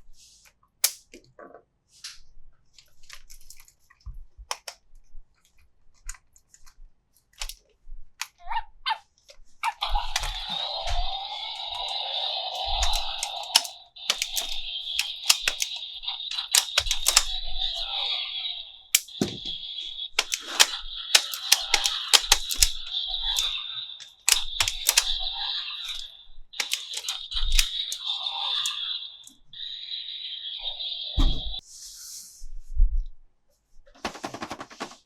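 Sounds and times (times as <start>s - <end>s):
plastic toy parts clicking and rattling: 2.8s - 4.8s, 5.4s - 8.4s, 9.3s - 18.0s, 18.9s - 29.4s.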